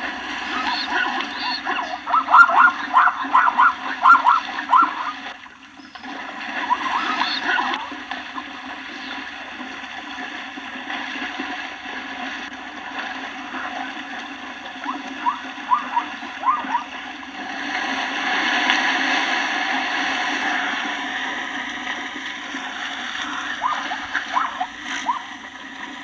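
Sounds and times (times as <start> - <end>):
animals splashing through water: 0.0 - 26.0
short rising yelping calls: 0.4 - 5.3, 6.6 - 7.9, 14.8 - 16.9, 23.2 - 25.4.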